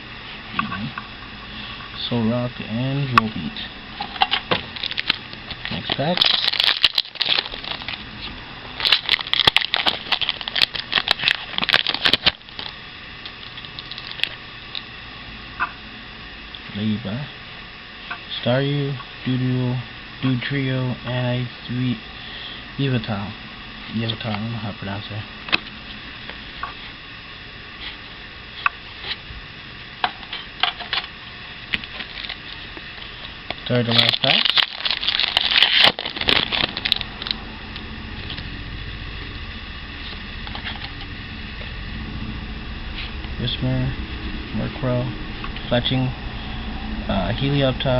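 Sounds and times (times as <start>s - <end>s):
steady low hiss: 0.0s - 47.9s
foil wrapper crinkling: 4.6s - 14.4s, 31.8s - 37.4s.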